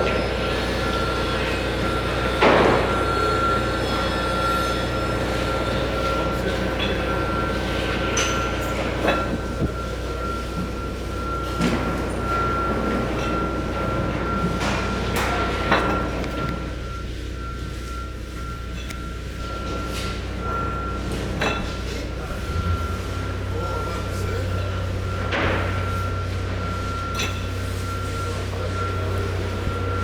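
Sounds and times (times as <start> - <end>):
truck engine running: 0.2 - 30.0
high whine: 22.2 - 26.2.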